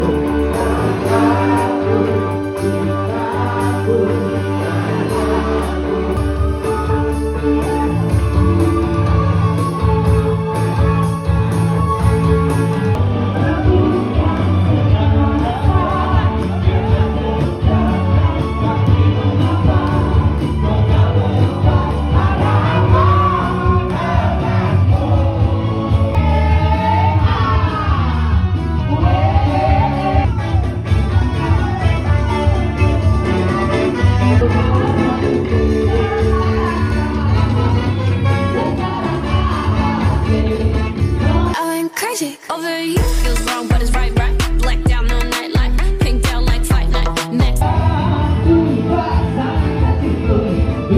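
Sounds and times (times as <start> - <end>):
person singing: 0.0 - 10.2, 13.0 - 33.6, 34.4 - 50.9
bass line: 0.0 - 41.6, 43.0 - 50.9
live band playing amplified music: 0.0 - 41.6, 43.0 - 50.9
guitar: 0.0 - 41.8, 42.9 - 50.9
steady beat: 43.0 - 47.6.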